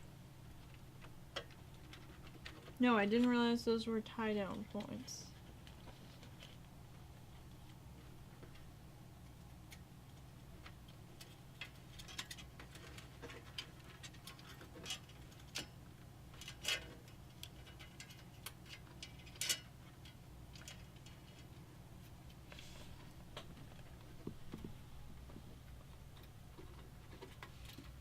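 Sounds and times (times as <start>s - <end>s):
steady low hum: 0.0s - 28.0s
cables and plastic parts clicking: 0.6s - 3.5s.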